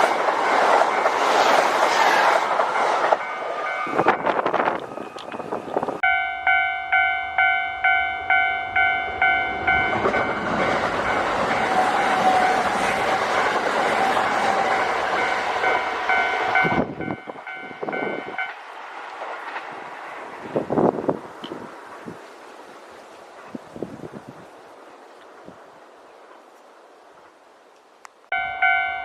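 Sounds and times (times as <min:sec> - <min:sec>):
train wheel and rail noise: 0:00.0 - 0:29.0
level crossing bell ringing: 0:06.0 - 0:12.3, 0:14.3 - 0:18.6, 0:28.3 - 0:29.0.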